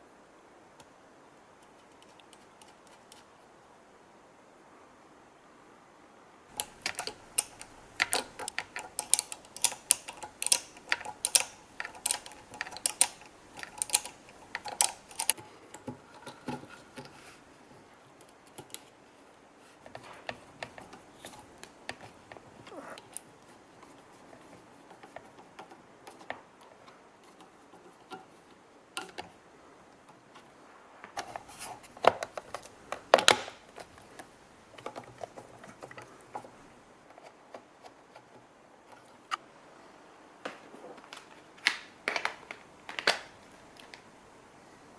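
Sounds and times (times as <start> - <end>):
clicks and knocks of small parts: 6.5 - 17.2, 19.8 - 23.3, 24.4 - 29.4, 31.2 - 39.4, 41.1 - 44.1.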